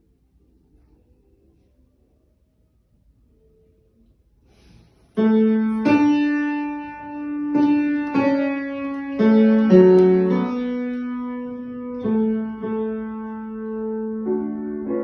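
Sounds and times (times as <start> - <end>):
piano melody: 5.2 - 15.0.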